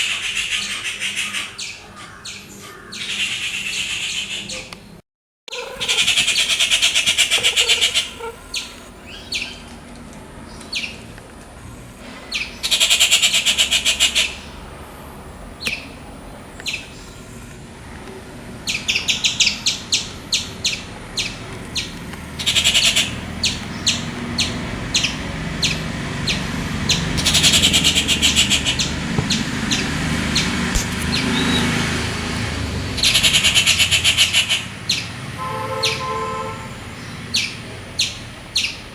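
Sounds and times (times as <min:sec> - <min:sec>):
bird rattling chatters: 0:05.5 - 0:09.6, 0:12.3 - 0:14.5, 0:21.2 - 0:31.8
sharp bird notes: 0:05.5 - 0:09.7.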